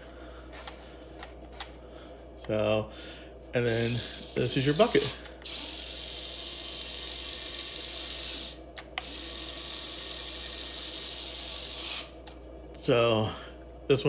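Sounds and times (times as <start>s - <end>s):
electric motor whine: 3.6s - 12.2s.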